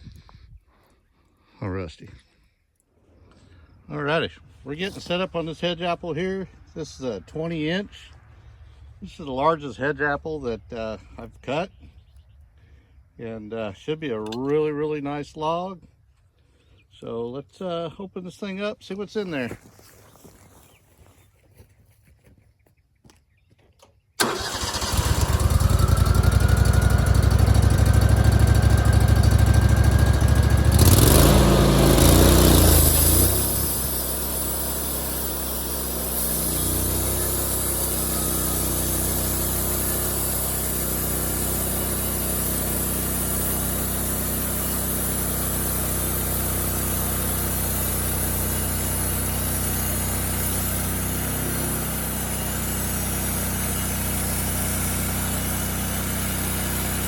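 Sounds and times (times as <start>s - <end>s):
sawmill engine running: 24.2s - 57.0s.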